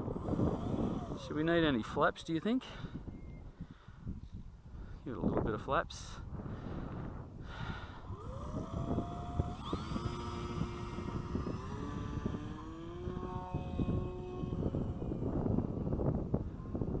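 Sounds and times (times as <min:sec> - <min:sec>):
model plane motor whining: 0:00.0 - 0:01.9, 0:07.5 - 0:16.7
wind rumble on microphone: 0:00.0 - 0:17.0.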